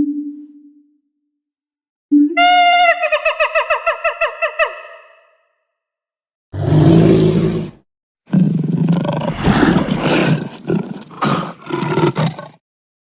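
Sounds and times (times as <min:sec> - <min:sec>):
big cat cub roaring and growling: 0:09.3 - 0:10.3.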